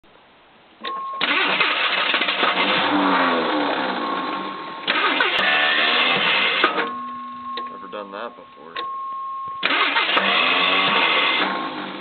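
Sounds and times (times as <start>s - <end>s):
starter motor cranking: 1.2s - 3.8s, 4.8s - 6.8s, 9.6s - 11.6s
short steady tone: 3.3s - 4.9s, 6.7s - 9.7s.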